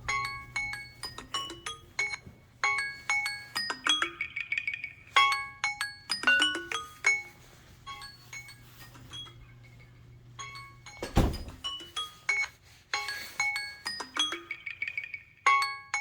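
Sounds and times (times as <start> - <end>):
phone timer marimba melody: 0.0 - 12.5
dull thump: 11.0 - 11.6.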